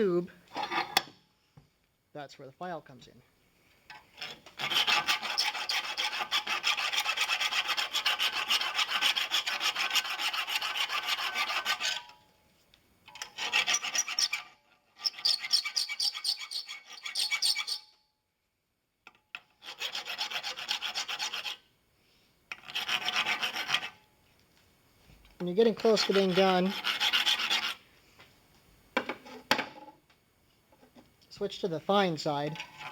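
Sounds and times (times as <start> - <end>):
file rasping metal: 4.2 - 12.1, 13.2 - 17.9, 19.6 - 21.6, 22.5 - 24.0, 25.8 - 27.8.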